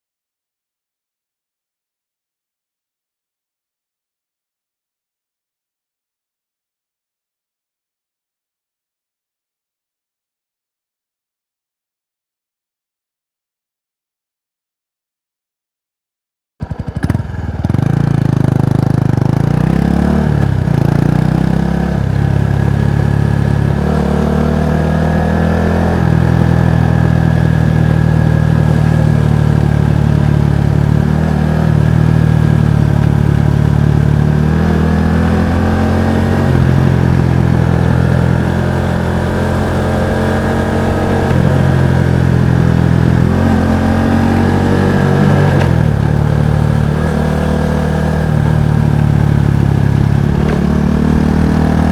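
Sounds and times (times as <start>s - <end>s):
motorcycle engine accelerating: 16.6s - 51.9s.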